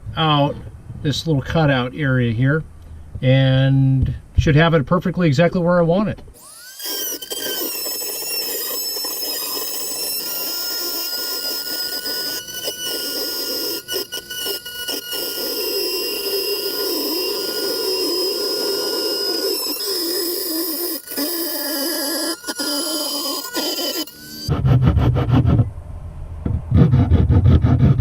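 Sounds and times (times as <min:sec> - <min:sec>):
hiss of cutting: 0:06.4 - 0:24.5
rotary tool whining: 0:06.4 - 0:25.8.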